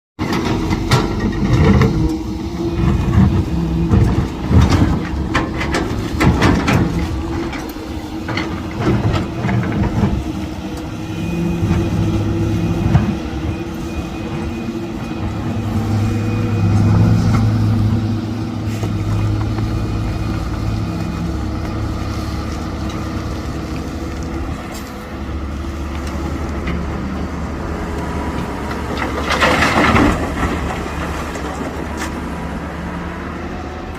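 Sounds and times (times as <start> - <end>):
knocks and clanks: 0.2 - 2.2, 2.8 - 10.3, 28.3 - 32.2
heavy machine engine running: 0.2 - 33.9.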